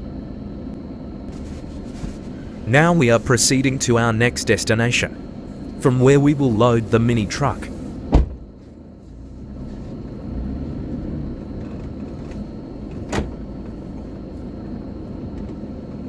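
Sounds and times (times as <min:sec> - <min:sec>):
vehicle driving: 0:09.0 - 0:14.8.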